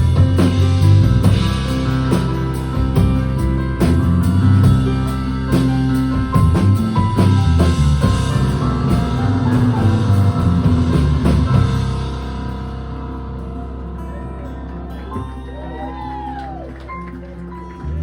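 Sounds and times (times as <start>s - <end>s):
drum kit: 0.0s - 14.2s
bass guitar: 0.0s - 18.0s.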